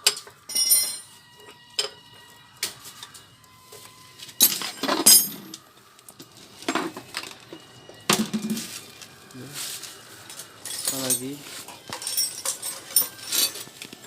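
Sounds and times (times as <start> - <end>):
metal tools clinking: 0.0 - 1.2, 4.4 - 5.6, 10.3 - 13.9.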